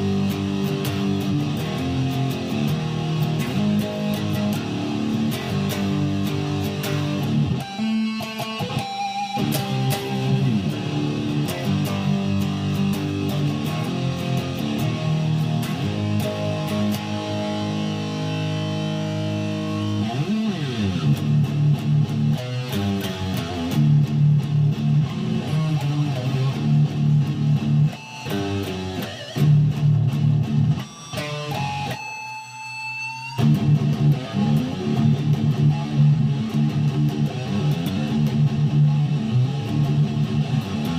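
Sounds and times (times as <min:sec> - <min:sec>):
electric guitar playing chords: 0:00.0 - 0:40.9.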